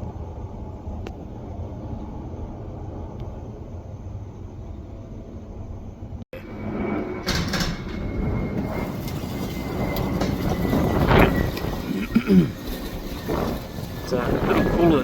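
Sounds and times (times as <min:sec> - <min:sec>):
jet aircraft rumble: 0:00.0 - 0:15.0
wind buffeting microphone: 0:05.5 - 0:15.0.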